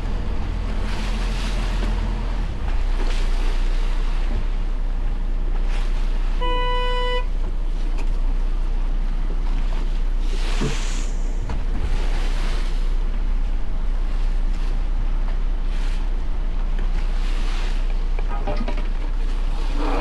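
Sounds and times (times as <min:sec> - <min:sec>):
water splash: 0:00.0 - 0:04.8, 0:09.5 - 0:14.9
boat motor rumbling: 0:00.0 - 0:20.0
short horn toot: 0:06.4 - 0:07.3
wind on microphone: 0:10.3 - 0:16.7.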